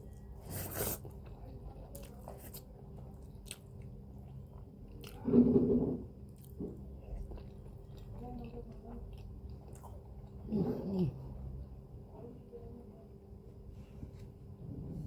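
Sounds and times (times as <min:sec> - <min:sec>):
chewing and biting food: 0:00.1 - 0:05.3, 0:06.3 - 0:10.4.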